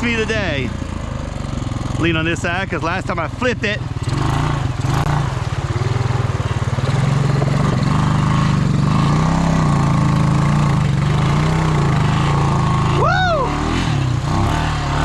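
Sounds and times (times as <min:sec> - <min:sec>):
atv engine running: 0:00.0 - 0:15.0.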